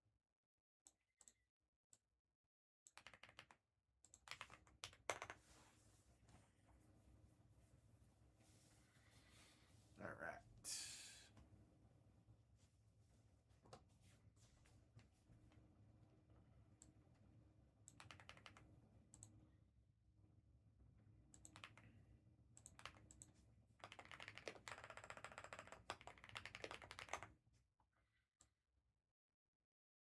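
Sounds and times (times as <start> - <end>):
keyboard typing: 2.9 - 5.4, 17.9 - 19.3, 21.4 - 21.9, 22.6 - 27.3.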